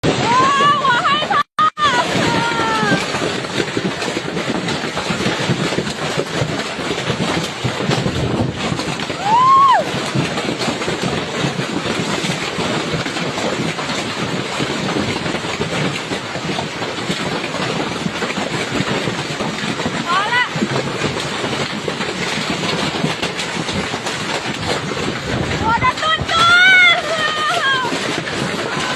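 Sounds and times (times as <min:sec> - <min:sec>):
hail and heavy rain pelting: 0:00.0 - 0:28.9.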